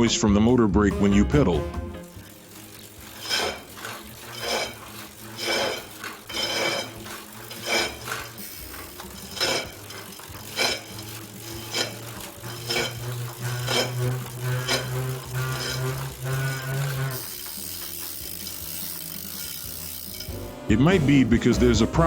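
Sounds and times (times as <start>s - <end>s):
metallic scrape and clink: 2.1s - 20.4s.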